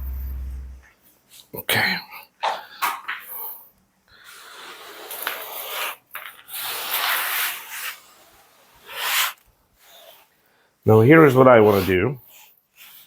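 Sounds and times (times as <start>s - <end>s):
sand hissing and rubbing on board: 4.4s - 10.3s, 11.0s - 13.0s.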